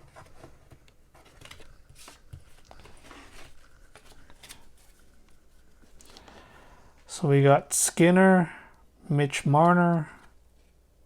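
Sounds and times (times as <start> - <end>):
trading cards rustling: 0.0 - 6.6.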